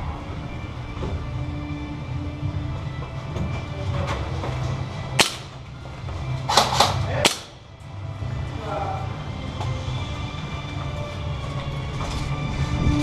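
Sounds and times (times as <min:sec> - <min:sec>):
airsoft gun firing: 0:05.2 - 0:05.6, 0:06.5 - 0:07.6.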